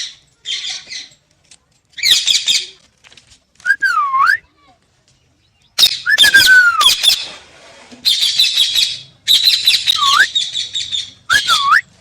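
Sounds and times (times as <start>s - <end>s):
parrot whistling: 8.5s - 10.4s, 11.3s - 11.9s.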